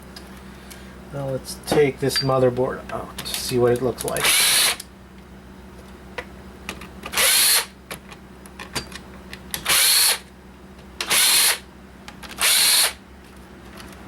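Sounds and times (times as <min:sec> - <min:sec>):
power drill bursts: 0:04.2 - 0:04.8, 0:07.1 - 0:07.7, 0:09.6 - 0:10.2, 0:11.0 - 0:11.6, 0:12.4 - 0:13.0
small clicks and handling knocks: 0:07.9 - 0:09.6.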